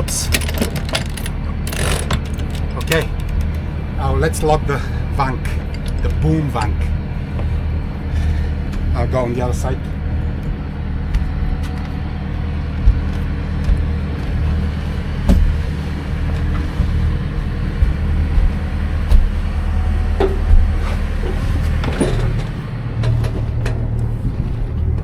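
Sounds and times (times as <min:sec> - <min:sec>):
knocks and clicks from deck gear: 0:00.0 - 0:03.7.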